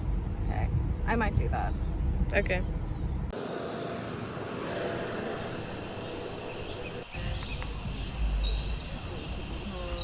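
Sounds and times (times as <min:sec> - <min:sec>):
low rumble: 0:00.0 - 0:09.1
crickets chirping: 0:03.4 - 0:10.0
steady hiss: 0:03.4 - 0:10.0.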